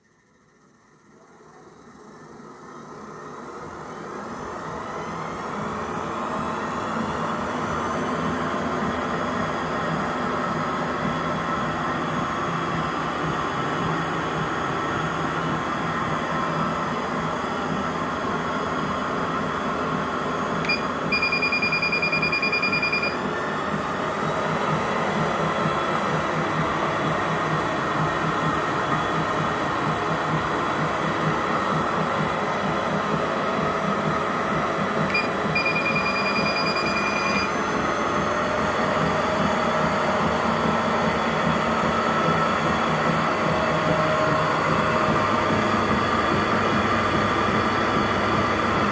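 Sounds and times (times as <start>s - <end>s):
treadmill motor whine: 0.0s - 48.9s
electronic beeps: 20.6s - 24.5s, 35.0s - 37.8s.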